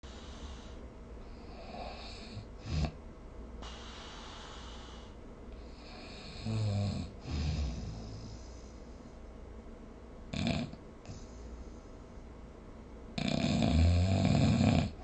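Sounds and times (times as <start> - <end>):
person snoring: 0.0 - 3.0, 5.7 - 8.4, 13.2 - 15.0.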